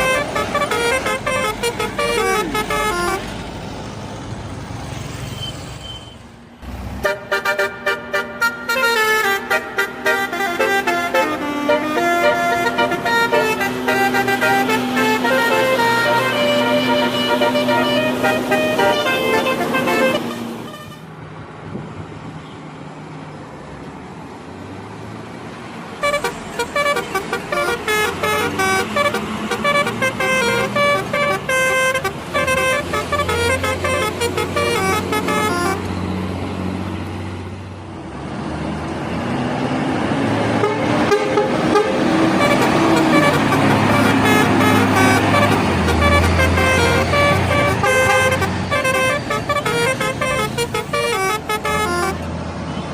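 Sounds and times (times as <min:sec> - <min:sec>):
multi-tone bus horns playing melodies: 0:00.0 - 0:03.4, 0:06.6 - 0:21.2, 0:26.0 - 0:36.8, 0:39.5 - 0:52.9
bus engines: 0:00.0 - 0:52.9.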